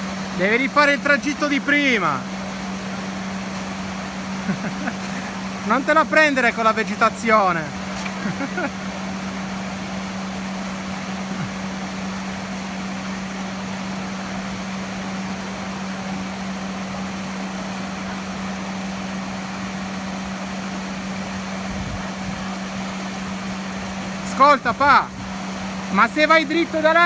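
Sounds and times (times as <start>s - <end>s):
even hiss: 0.0s - 8.8s
machine hum: 0.0s - 27.0s.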